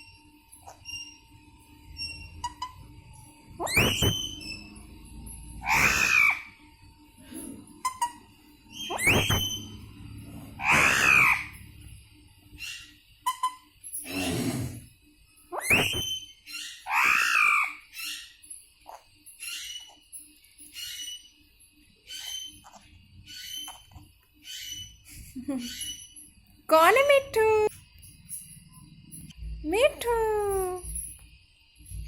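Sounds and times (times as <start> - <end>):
parakeet shrill screeches: 3.6 - 4.8, 5.6 - 6.6, 7.8 - 9.8, 10.5 - 11.7, 15.5 - 20.0, 22.1 - 25.0
parakeet short chirps: 8.8 - 9.8.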